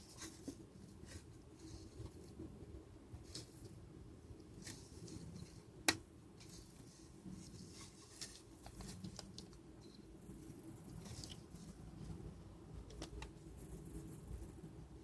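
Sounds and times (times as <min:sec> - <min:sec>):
handling rustles and clicks: 0:04.5 - 0:12.2.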